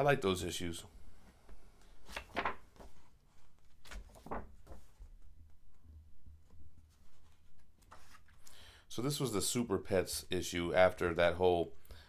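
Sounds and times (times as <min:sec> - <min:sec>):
book pages turning: 0:02.0 - 0:05.2, 0:06.4 - 0:08.4.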